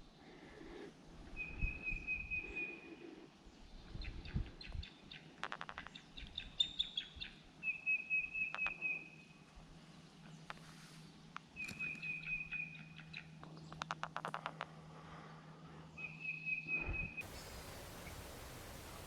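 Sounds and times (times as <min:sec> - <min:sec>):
bird trilling: 0:17.2 - 0:19.0.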